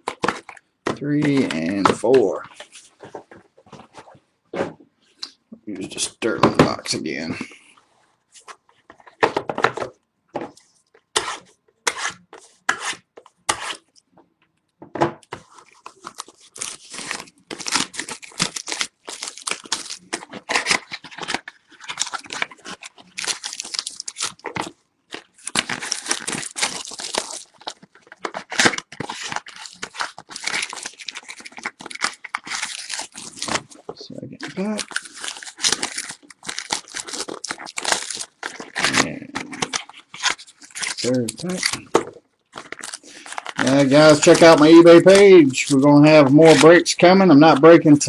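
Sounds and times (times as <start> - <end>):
wrapper tearing and crinkling: 15.4 - 47.8.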